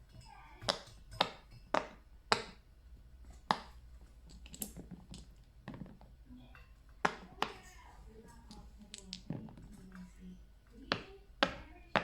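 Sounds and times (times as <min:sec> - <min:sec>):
fidget toy popping: 0:00.5 - 0:02.6, 0:03.3 - 0:06.2, 0:07.0 - 0:07.8, 0:08.4 - 0:10.1, 0:10.8 - 0:12.0.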